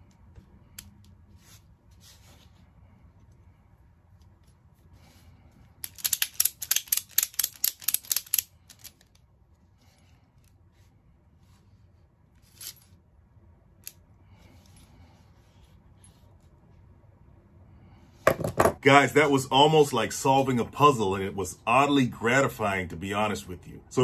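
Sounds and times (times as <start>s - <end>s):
ratchet strap clicking: 5.7s - 9.2s.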